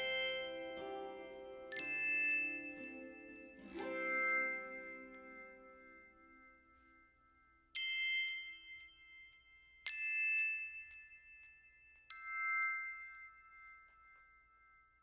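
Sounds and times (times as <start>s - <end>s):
plucked-string melody: 0.0s - 6.6s
struck bell-like notes: 0.0s - 9.7s.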